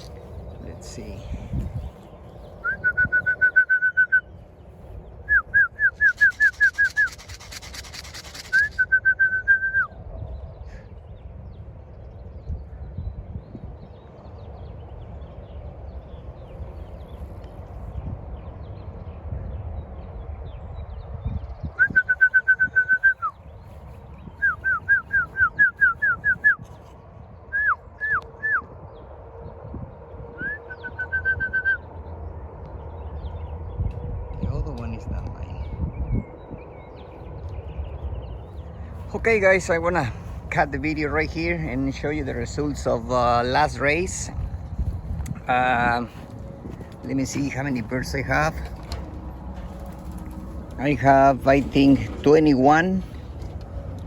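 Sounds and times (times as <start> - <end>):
songbird singing: 0.0 - 54.0
high whistled notes: 5.3 - 7.4, 8.4 - 9.8
fast hissing flutter: 6.0 - 8.9.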